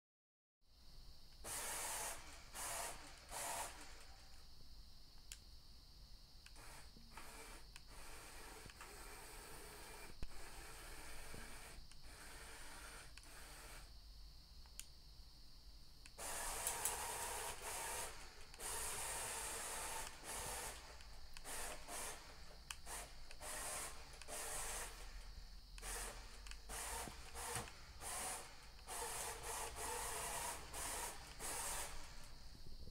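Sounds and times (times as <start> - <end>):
robot vacuum motors whirring: 1.4 - 4.4, 6.5 - 13.9, 16.1 - 32.7
clicks: 25.8 - 27.8.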